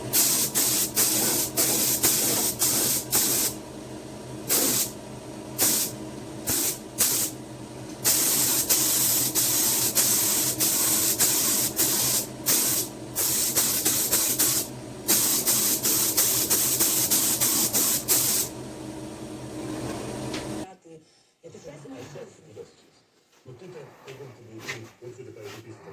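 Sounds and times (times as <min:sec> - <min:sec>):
steady low hum: 0:00.0 - 0:20.7
spray paint hissing: 0:00.1 - 0:03.6, 0:04.5 - 0:05.0, 0:05.6 - 0:07.4, 0:08.0 - 0:18.5.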